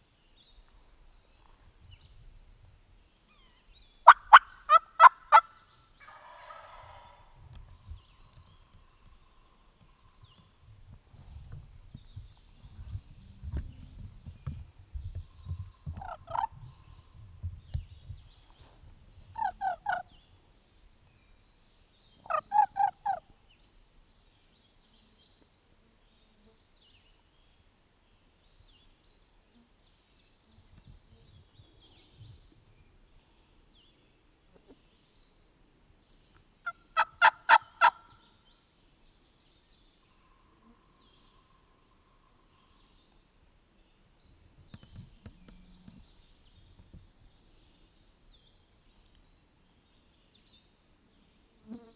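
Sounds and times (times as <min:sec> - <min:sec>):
songbirds chirping faintly: 0:00.0 - 0:51.9
turkeys gobbling: 0:04.0 - 0:07.2, 0:36.6 - 0:38.1.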